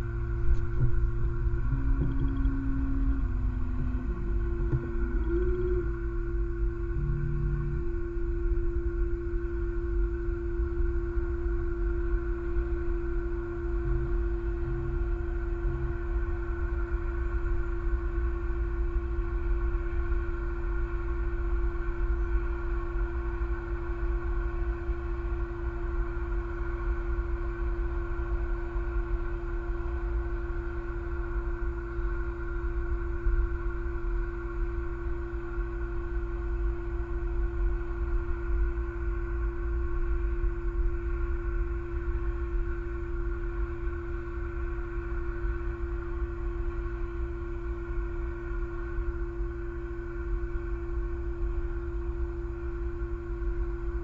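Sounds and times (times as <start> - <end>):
wind rumble on microphone: 0.0 - 10.7, 12.0 - 20.8
steady multi-tone hum: 0.0 - 54.0.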